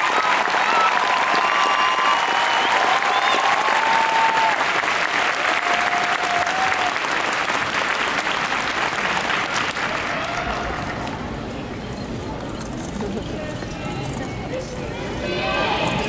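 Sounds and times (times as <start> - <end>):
crowd applauding: 0.0 - 11.3.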